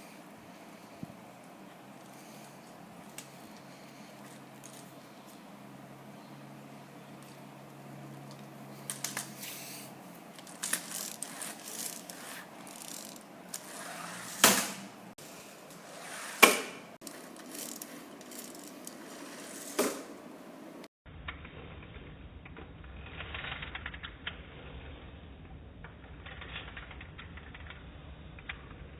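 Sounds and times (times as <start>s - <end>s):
plastic parts clicking and clattering: 2.1s - 5.0s, 8.3s - 9.4s, 10.3s - 14.8s, 16.4s - 20.0s.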